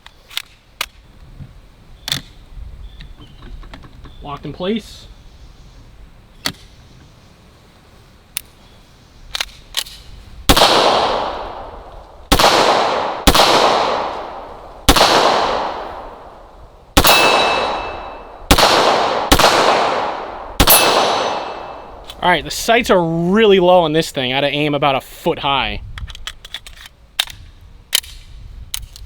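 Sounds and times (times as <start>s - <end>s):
gun handling clicks: 0.0s - 1.0s, 9.3s - 14.4s, 18.5s - 22.2s, 25.9s - 29.0s
pistol shots with echo: 10.5s - 16.4s, 17.0s - 22.1s.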